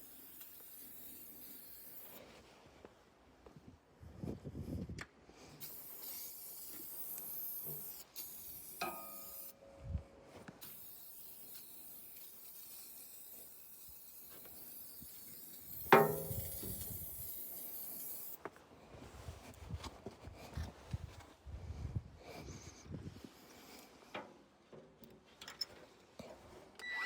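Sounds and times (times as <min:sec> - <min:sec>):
steady hiss: 0:00.0 - 0:02.2, 0:05.6 - 0:09.6, 0:10.6 - 0:18.4.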